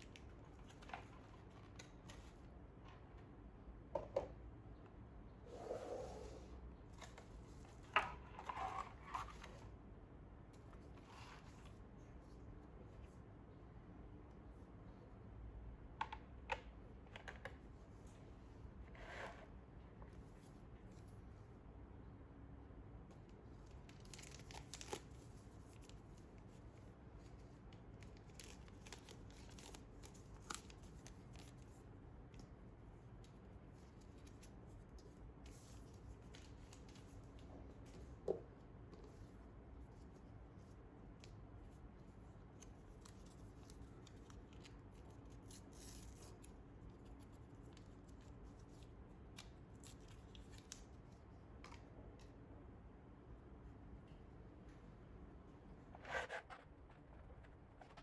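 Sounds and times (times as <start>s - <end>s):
packaging rustling and tearing: 24.0s - 25.2s.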